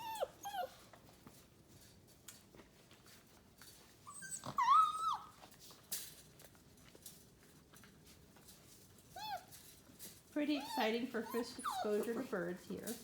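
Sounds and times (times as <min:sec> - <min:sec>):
puppy whining: 0:00.0 - 0:01.0, 0:04.0 - 0:05.5, 0:09.1 - 0:09.6, 0:10.4 - 0:12.3.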